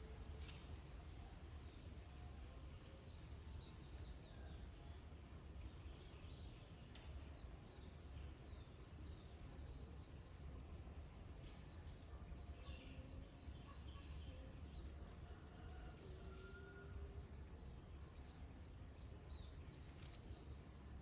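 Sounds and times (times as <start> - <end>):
small birds chirping: 17.2 - 21.0.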